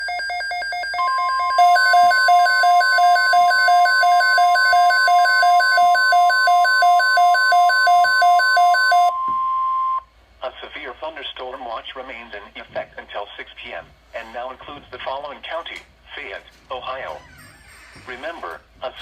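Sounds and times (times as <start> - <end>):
alarm beeping between two pitches: 0.0 - 10.0
steady warning alarm tone: 0.0 - 10.0.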